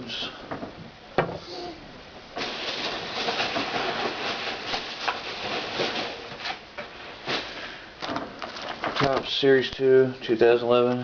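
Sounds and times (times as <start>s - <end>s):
packaging rustling: 2.4s - 9.4s.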